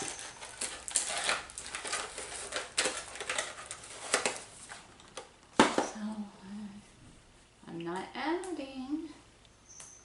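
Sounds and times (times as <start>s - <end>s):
packaging crinkling: 0.0s - 5.8s.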